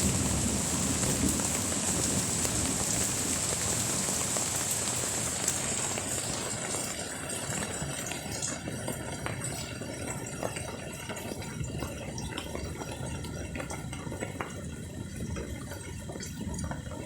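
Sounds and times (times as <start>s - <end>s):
rain falling: 0.0s - 10.1s.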